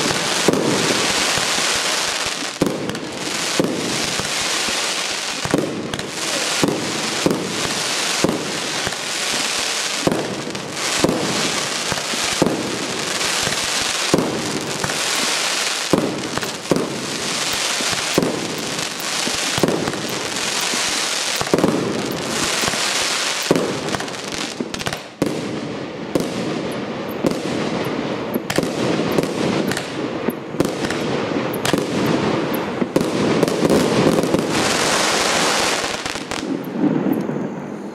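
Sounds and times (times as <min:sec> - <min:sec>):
steady hiss: 0:00.0 - 0:26.0
fireworks shots: 0:00.0 - 0:37.9.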